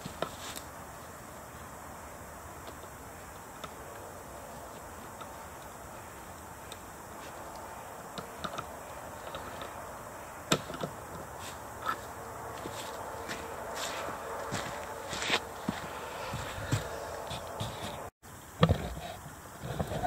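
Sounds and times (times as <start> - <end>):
steady background hiss: 0.0 - 20.0.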